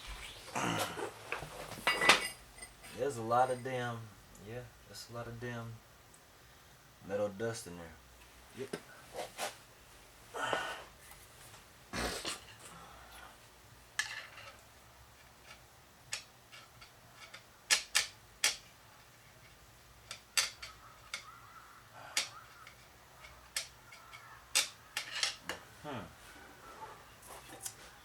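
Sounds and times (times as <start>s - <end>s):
hand tools clicking and clinking: 1.8s - 3.7s, 14.0s - 21.4s, 22.0s - 25.7s.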